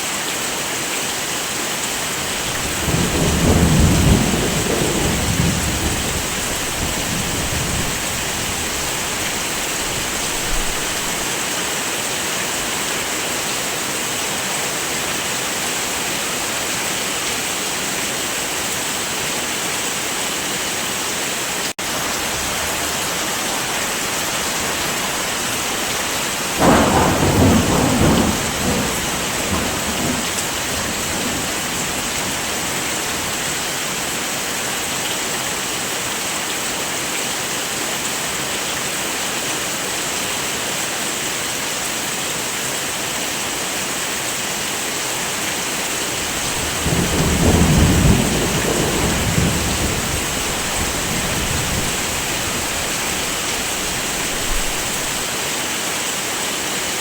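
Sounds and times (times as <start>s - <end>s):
heavy rain hiss: 0.0s - 57.0s
thunder rolling: 2.3s - 11.3s, 26.6s - 33.3s, 46.2s - 55.2s.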